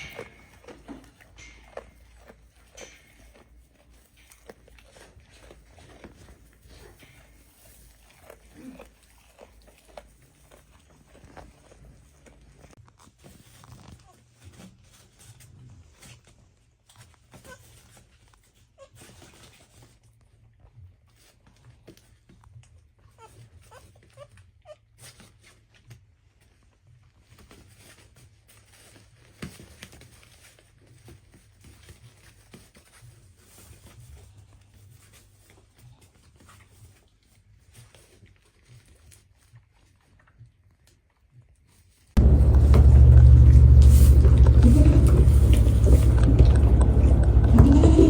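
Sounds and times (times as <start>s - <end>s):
goats rustling and crunching: 0.0s - 23.6s, 25.2s - 48.0s
steady low rumble: 42.2s - 48.0s.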